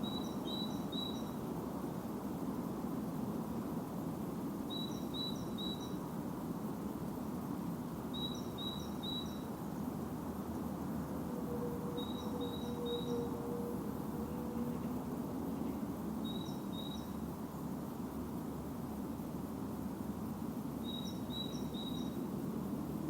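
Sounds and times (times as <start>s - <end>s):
songbird singing: 0.0s - 1.5s, 4.6s - 6.1s, 8.0s - 9.7s, 11.0s - 17.7s, 20.8s - 22.4s
faint steady hum: 0.0s - 23.0s.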